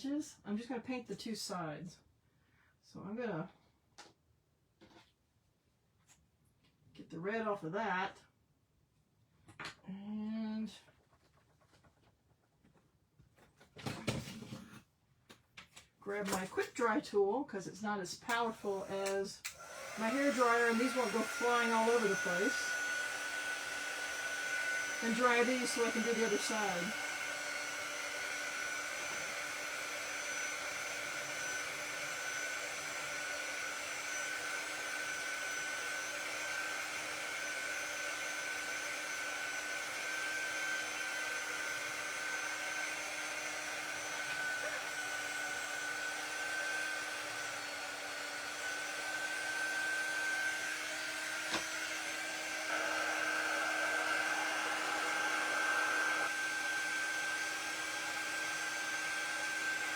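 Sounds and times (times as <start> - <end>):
air blower whirring: 18.3 - 59.9.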